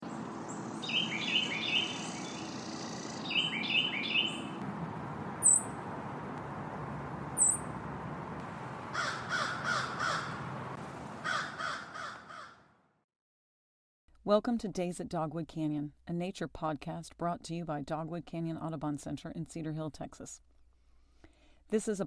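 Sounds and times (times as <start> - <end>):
birds calling: 0.0 - 12.6.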